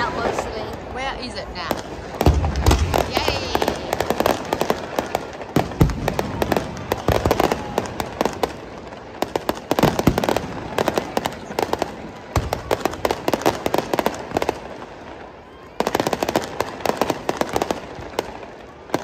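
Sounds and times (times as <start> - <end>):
fireworks crackling pops: 0.0 - 19.0
deep firework booms: 1.6 - 14.8.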